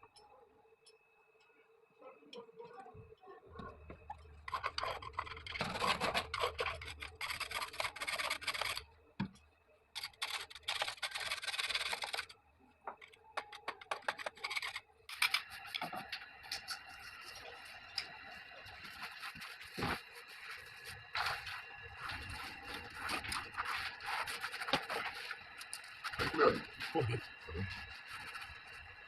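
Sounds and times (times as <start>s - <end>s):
scraping on plumbing fittings: 4.1s - 8.8s.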